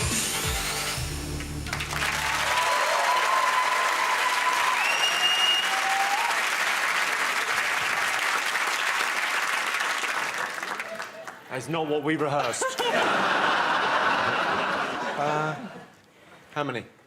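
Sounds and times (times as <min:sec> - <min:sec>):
audience applauding: 0:01.4 - 0:11.5
cheers and whistles: 0:02.0 - 0:06.5.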